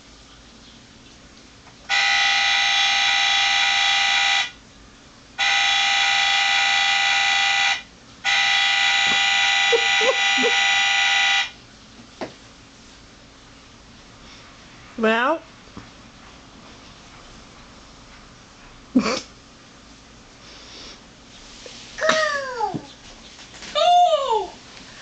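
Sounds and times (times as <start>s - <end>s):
car horn blasts: 1.9s - 4.6s, 5.4s - 11.6s.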